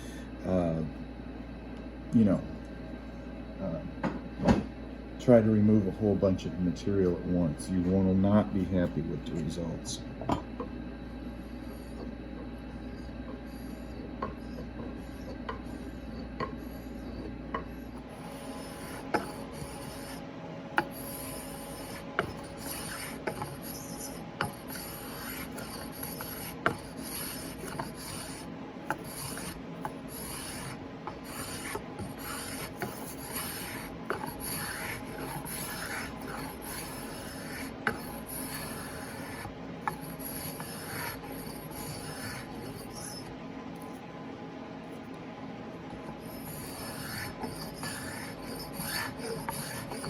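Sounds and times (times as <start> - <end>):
spokeshave scraping wood: 11.8 - 20.2, 20.8 - 43.3, 46.0 - 50.0.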